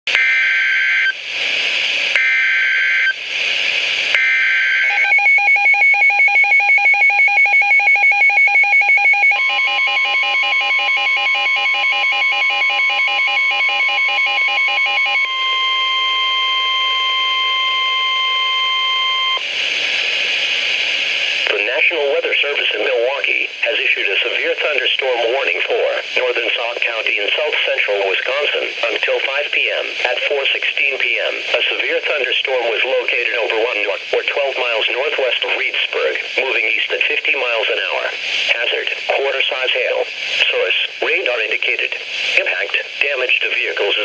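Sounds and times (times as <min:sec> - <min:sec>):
steady warning alarm tone: 0:00.1 - 0:01.2, 0:02.1 - 0:03.2, 0:04.1 - 0:19.5
radio hiss: 0:01.1 - 0:02.2, 0:03.1 - 0:04.2, 0:15.4 - 0:44.0.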